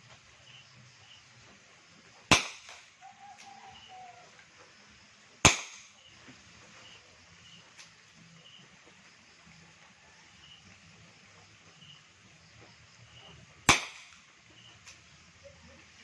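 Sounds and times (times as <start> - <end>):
airsoft revolver shots: 2.3 - 3.0, 5.4 - 6.0, 13.7 - 14.3.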